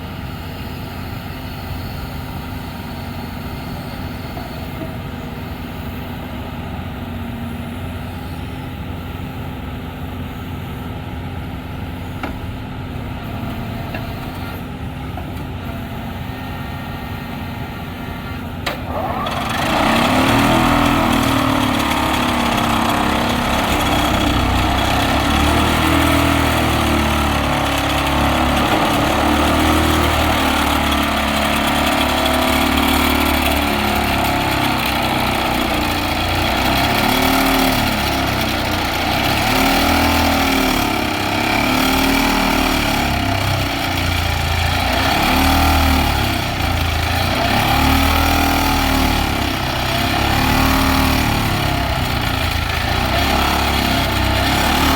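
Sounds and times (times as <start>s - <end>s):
vibratory pile driver drone: 11.2s - 54.9s.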